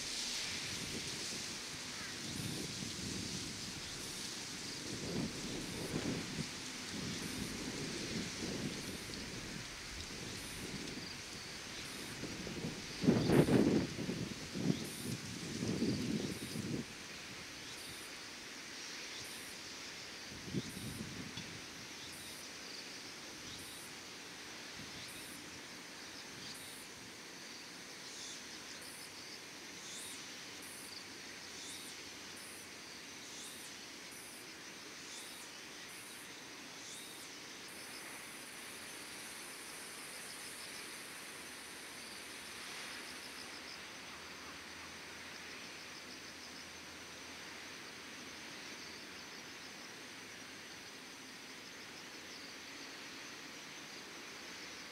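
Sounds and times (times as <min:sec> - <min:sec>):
rising insect chirps: 0:00.0 - 0:16.9, 0:29.8 - 0:47.0
wind rumble on microphone: 0:00.0 - 0:17.5, 0:20.3 - 0:21.7
insects trilling: 0:00.0 - 0:54.9
very high insect call: 0:00.0 - 0:54.9.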